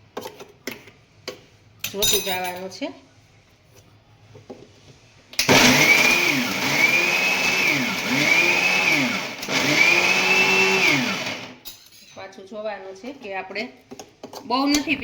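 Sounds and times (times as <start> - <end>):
mixer grinder whining: 5.4 - 11.6.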